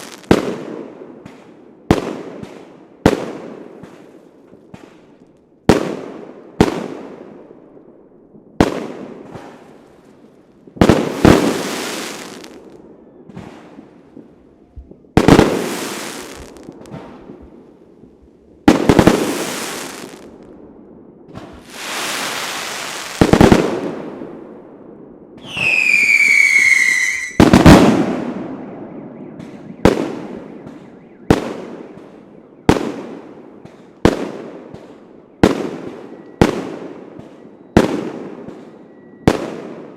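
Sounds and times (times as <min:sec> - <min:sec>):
falling firework whistle: 0:25.4 - 0:32.9, 0:35.4 - 0:39.6.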